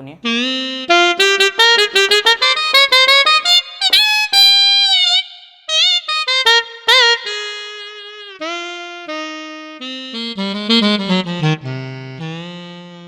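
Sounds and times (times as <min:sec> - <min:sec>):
keyboard saxophone voice notes: 0:00.0 - 0:03.5, 0:06.4 - 0:13.0.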